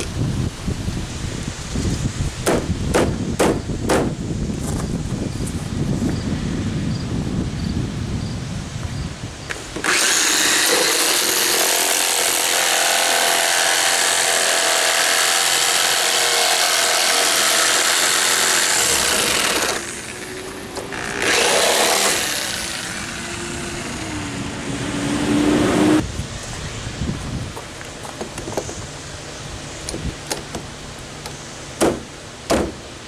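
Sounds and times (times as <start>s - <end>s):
power saw cutting: 9.5s - 26.0s.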